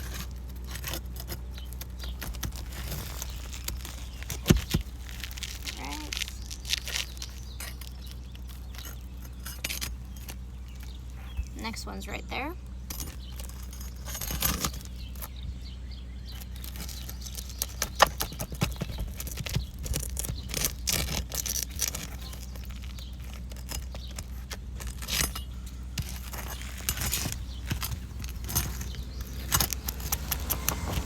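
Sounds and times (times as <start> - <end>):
metal tool scraping shingles: 0.0 - 11.6, 12.8 - 15.4, 16.3 - 31.0.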